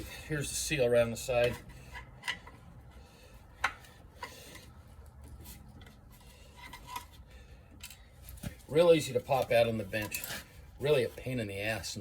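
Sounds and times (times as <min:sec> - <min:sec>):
metal tools scraping: 0:09.0 - 0:11.2.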